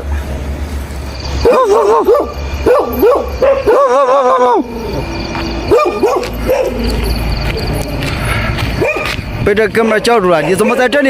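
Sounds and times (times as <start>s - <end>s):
dog yelping: 1.4s - 8.1s, 8.8s - 9.2s, 9.9s - 11.0s
dog howling: 1.4s - 8.2s.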